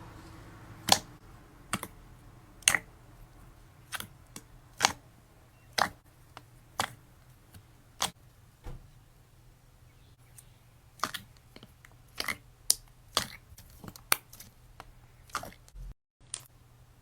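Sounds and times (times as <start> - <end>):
slime popping and crackling: 2.6 - 2.9, 5.7 - 6.0, 11.0 - 16.5.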